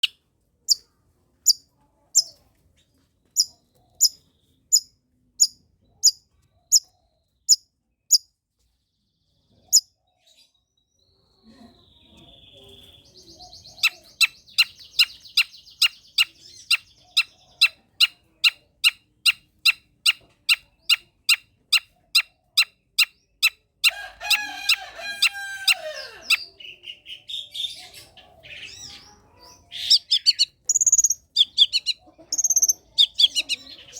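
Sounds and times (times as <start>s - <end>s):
shrike singing: 28.5s - 33.9s.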